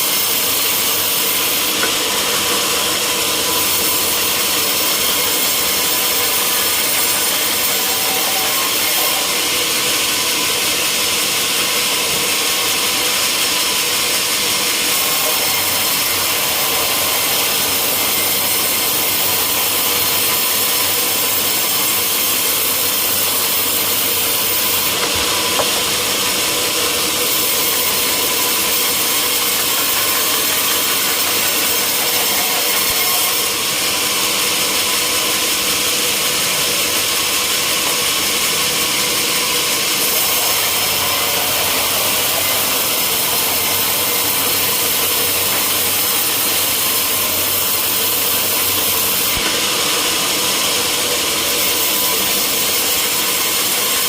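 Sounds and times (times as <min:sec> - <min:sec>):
saw cutting through log: 0:00.0 - 0:54.0.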